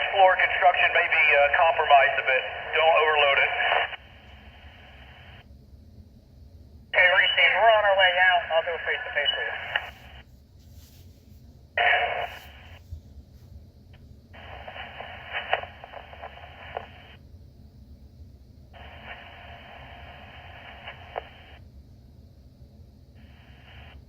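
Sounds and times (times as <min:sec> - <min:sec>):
radio static bursts: 0:00.0 - 0:05.4, 0:07.0 - 0:10.2, 0:11.8 - 0:12.8, 0:14.4 - 0:17.2, 0:18.8 - 0:21.6.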